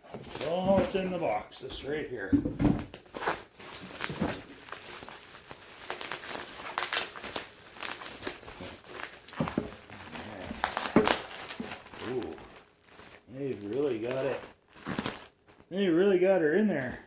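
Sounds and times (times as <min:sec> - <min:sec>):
cardboard packaging rustling: 0:00.0 - 0:17.0.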